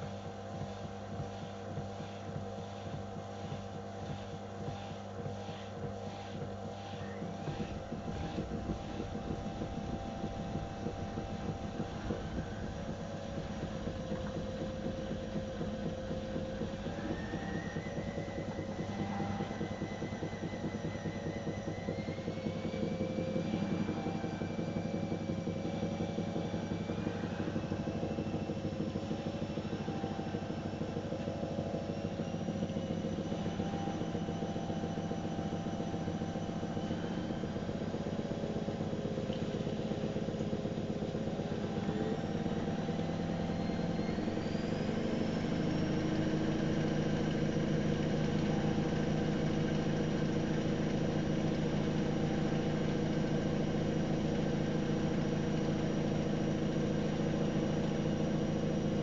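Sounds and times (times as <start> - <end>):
washing machine spinning up: 0.0 - 59.0.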